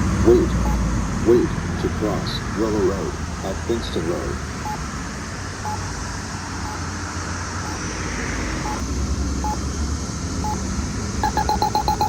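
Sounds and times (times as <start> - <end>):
passing road traffic: 0.0 - 12.0
vehicle passing close: 0.0 - 12.0
faint short beeps: 0.4 - 0.8, 5.7 - 5.9, 8.6 - 8.8, 11.2 - 12.0.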